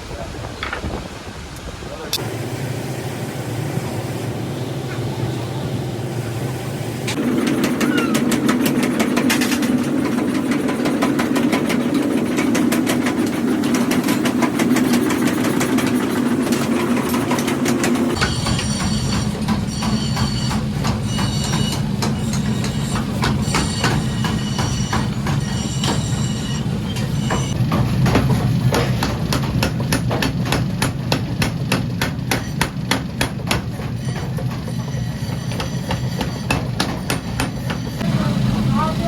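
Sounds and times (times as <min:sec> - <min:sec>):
steady machine hum: 0:02.2 - 0:27.8, 0:37.8 - 0:39.0
power hammer striking iron: 0:07.1 - 0:38.1
hammer blows with metallic ring: 0:18.1 - 0:38.1.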